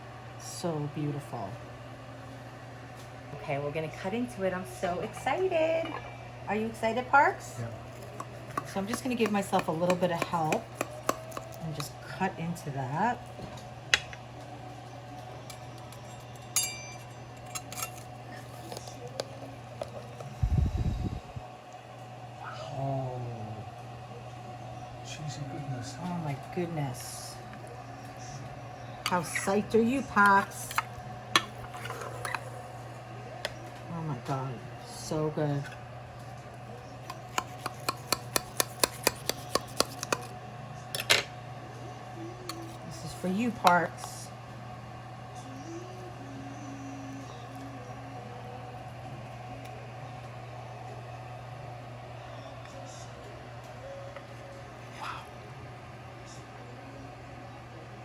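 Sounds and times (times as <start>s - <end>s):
steady low hum: 0.0s - 58.0s
utensils clicking on a baking dish: 8.1s - 11.9s, 37.1s - 40.3s.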